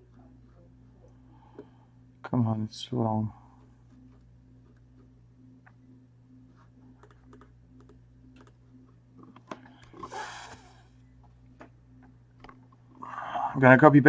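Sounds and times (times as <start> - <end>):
computer keyboard typing clicks: 7.0 - 8.6.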